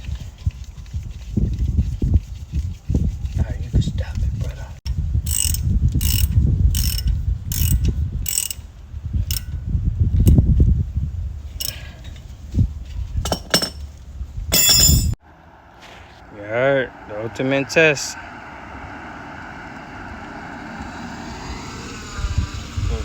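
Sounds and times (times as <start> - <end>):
low handling rumble: 2.9 - 23.0
ratchet wrench clicking: 5.2 - 8.6, 9.2 - 9.6, 11.6 - 11.8.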